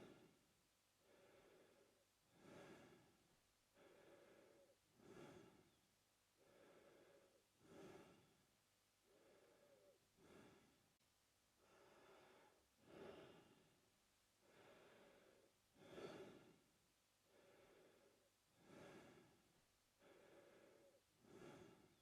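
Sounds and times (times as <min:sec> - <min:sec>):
man breathing through mouth: 0:01.0 - 0:03.2, 0:03.8 - 0:05.8, 0:06.4 - 0:08.4, 0:09.1 - 0:10.8, 0:11.6 - 0:13.7, 0:14.4 - 0:16.6, 0:17.3 - 0:19.4, 0:20.0 - 0:22.0.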